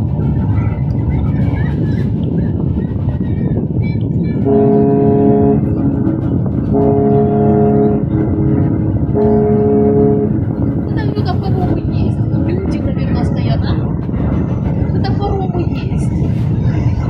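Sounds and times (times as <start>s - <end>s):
low rumble: 0.0s - 17.0s
ship's horn blasts: 4.4s - 11.8s.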